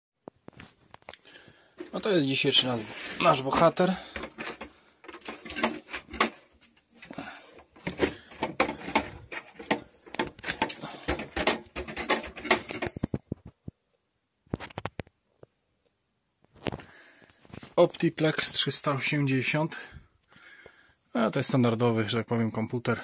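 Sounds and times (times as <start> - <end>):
computer case knocks and scrapes: 7.8 - 13.4.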